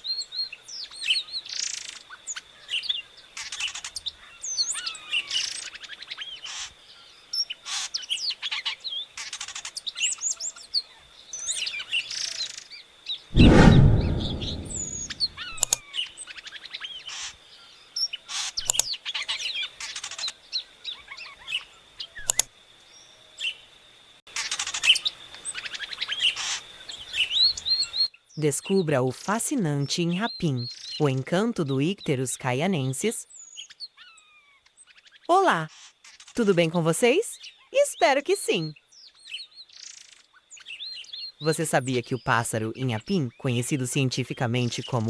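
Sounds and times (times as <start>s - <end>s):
loud low rumbling: 13.4s - 15.7s.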